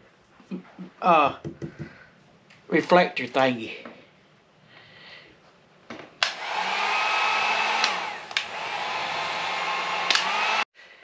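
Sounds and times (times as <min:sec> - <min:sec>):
hot-air blower whining: 0:06.2 - 0:10.7.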